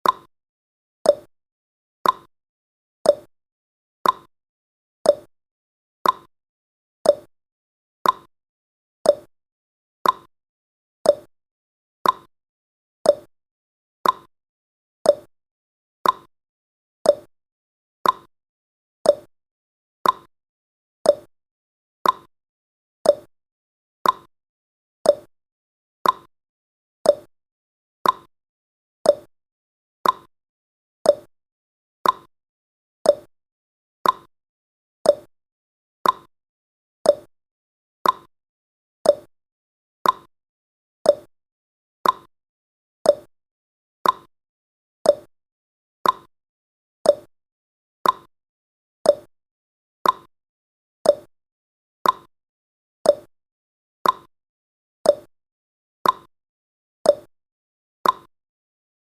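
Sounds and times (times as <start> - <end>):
timer ticking: 0.0 - 0.3, 1.1 - 1.3, 2.0 - 2.3, 3.1 - 3.3, 4.0 - 4.3, 5.1 - 5.3, 6.0 - 6.3, 7.1 - 7.3, 8.0 - 8.3, 9.1 - 9.3, 10.0 - 10.3, 11.1 - 11.3, 12.0 - 12.3, 13.1 - 13.3, 14.0 - 14.3, 15.1 - 15.3, 16.0 - 16.3, 17.1 - 17.3, 18.0 - 18.3, 19.1 - 19.3, 20.0 - 20.3, 21.1 - 21.3, 22.0 - 22.3, 23.0 - 23.3, 24.0 - 24.3, 25.1 - 25.3, 26.0 - 26.3, 27.1 - 27.3, 28.0 - 28.3, 29.1 - 29.3, 30.0 - 30.3, 31.1 - 31.3, 32.0 - 32.3, 33.1 - 33.3, 34.0 - 34.3, 35.1 - 35.3, 36.0 - 36.3, 37.1 - 37.3, 38.0 - 38.3, 39.0 - 39.3, 40.0 - 40.3, 41.1 - 41.3, 42.0 - 42.3, 43.1 - 43.3, 44.0 - 44.3, 45.1 - 45.3, 46.0 - 46.3, 47.1 - 47.3, 48.0 - 48.3, 49.1 - 49.3, 50.0 - 50.3, 51.1 - 51.3, 52.0 - 52.3, 53.1 - 53.3, 54.0 - 54.3, 55.1 - 55.3, 56.0 - 56.3, 57.1 - 57.3, 58.0 - 58.3.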